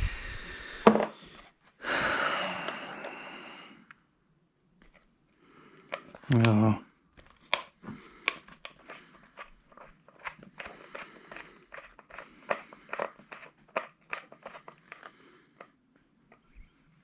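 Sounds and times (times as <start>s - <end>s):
plastic parts clicking and crunching: 7.2s - 15.7s.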